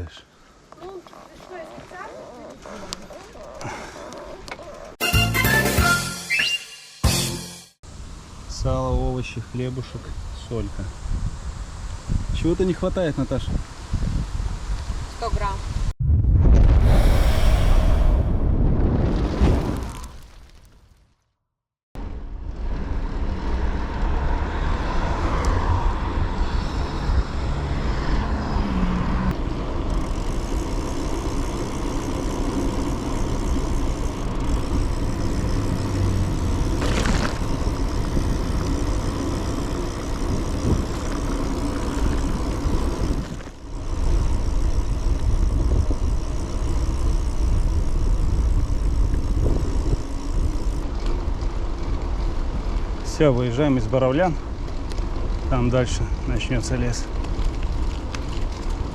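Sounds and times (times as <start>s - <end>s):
motor traffic passing: 1.2s - 5.6s, 22.6s - 53.0s
wind rushing over microphone: 10.1s - 20.2s.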